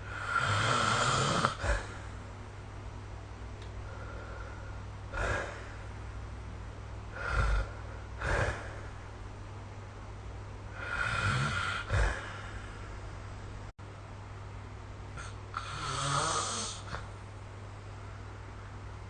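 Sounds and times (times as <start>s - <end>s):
person snoring: 0.0s - 2.0s, 4.0s - 5.8s, 7.1s - 8.9s, 10.8s - 12.6s, 15.2s - 17.0s
low background hum: 0.0s - 19.0s.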